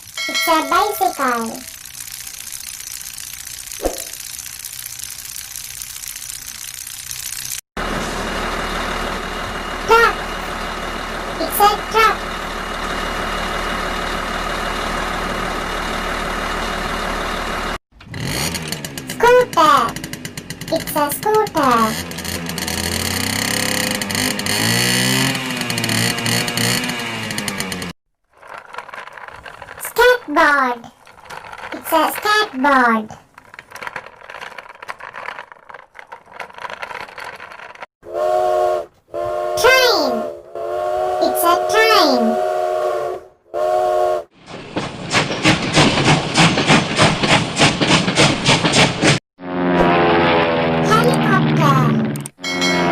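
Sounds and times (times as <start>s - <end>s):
truck engine idling: 7.8s - 17.8s
skateboard wheels rolling on pavement: 22.0s - 32.5s, 33.2s - 37.9s
train horn chord: 38.1s - 39.6s, 40.2s - 44.3s.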